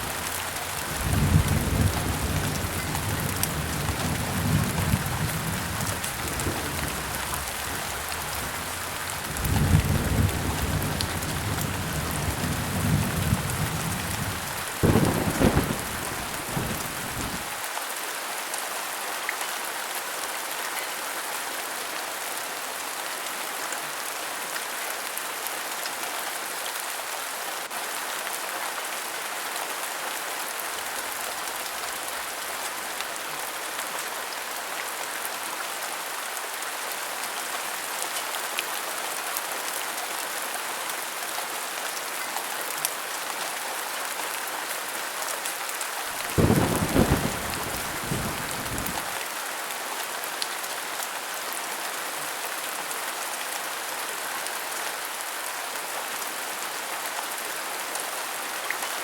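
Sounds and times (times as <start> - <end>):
thunderclap rumble: 0.0 - 17.5, 46.2 - 49.1
heavy rain falling: 0.0 - 59.0.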